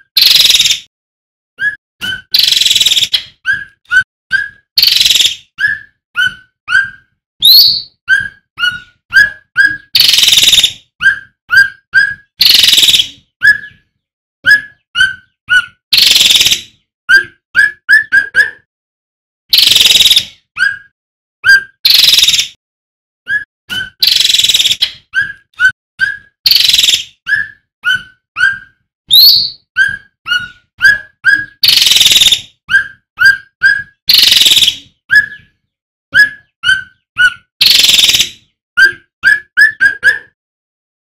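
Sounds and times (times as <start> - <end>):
bird whistled notes: 1.6 - 13.8, 23.3 - 35.5, 36.2 - 40.0.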